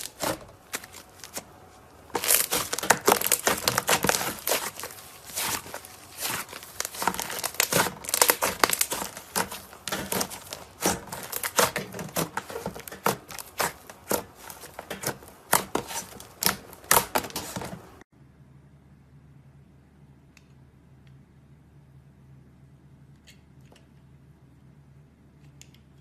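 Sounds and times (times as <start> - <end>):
slime crackling and popping: 0.0 - 18.0.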